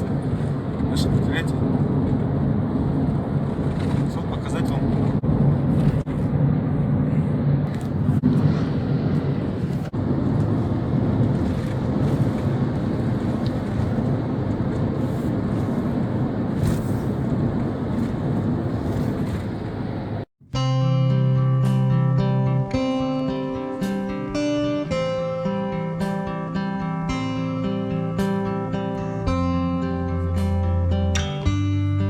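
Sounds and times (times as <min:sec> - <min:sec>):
vehicle engine and road noise: 0:00.0 - 0:20.3
wind on microphone: 0:00.0 - 0:20.3
acoustic guitar music: 0:20.4 - 0:32.0.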